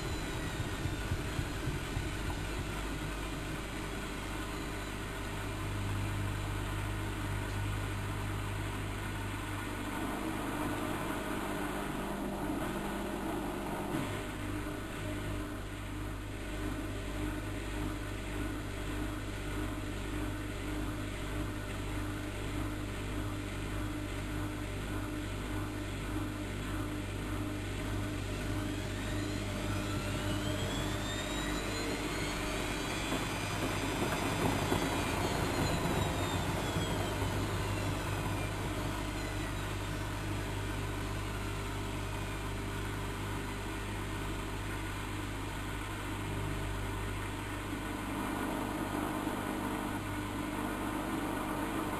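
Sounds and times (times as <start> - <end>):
pulsing tone: 0.0 - 5.5, 28.2 - 41.4
drum motor whine: 0.0 - 51.9
washing machine humming: 0.0 - 51.9.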